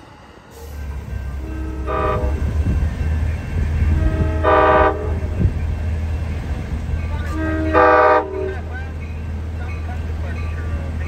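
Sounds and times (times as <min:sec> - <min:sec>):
train low rumble: 0:00.0 - 0:11.0
train horn blasts: 0:01.3 - 0:02.9, 0:03.8 - 0:05.5, 0:07.2 - 0:08.7.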